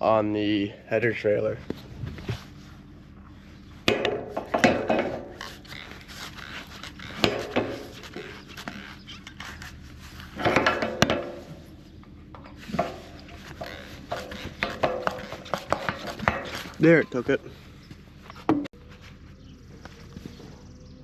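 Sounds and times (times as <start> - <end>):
scraping rubs: 1.6 - 11.9, 12.5 - 19.2
metal clicks and knocks: 10.4 - 16.8.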